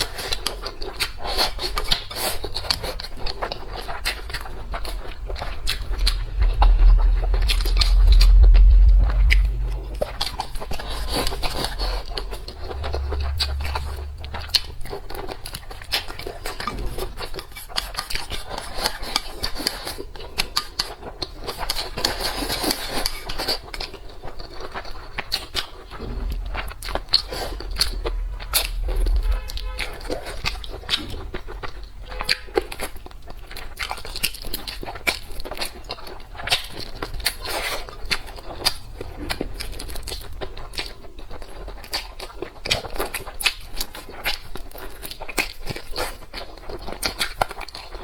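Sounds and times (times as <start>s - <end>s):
heavy low rumble: 3.4s - 17.4s, 25.8s - 33.3s, 38.2s - 42.1s.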